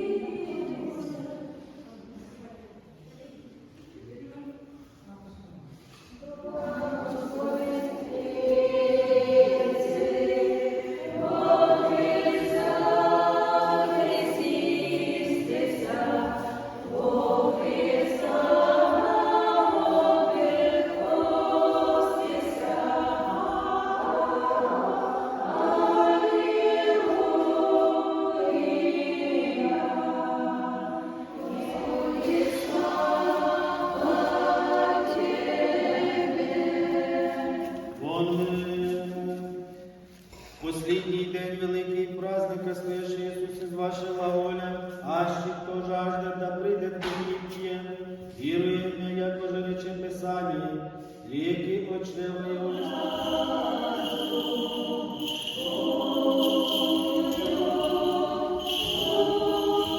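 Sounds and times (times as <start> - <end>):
choir singing unaccompanied chant: 0.0 - 1.7, 6.2 - 38.1, 51.6 - 59.9.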